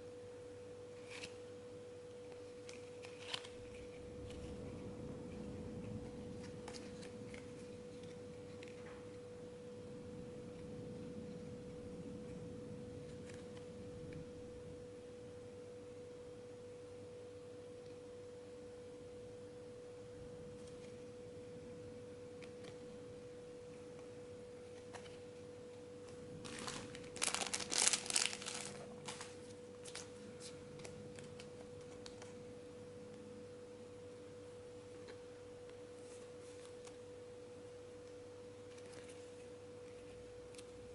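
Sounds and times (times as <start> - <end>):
packaging crinkling and tearing: 2.6 - 4.5, 26.4 - 32.3.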